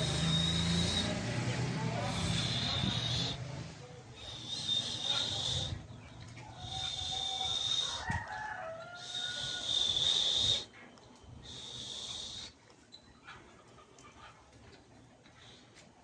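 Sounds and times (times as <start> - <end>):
high pulsing buzz: 0.0 - 1.4
chicken crowing call: 6.7 - 10.1.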